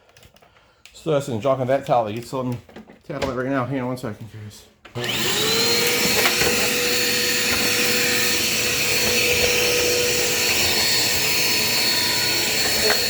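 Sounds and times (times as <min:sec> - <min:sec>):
vacuum cleaner motor running: 0:04.9 - 0:13.0.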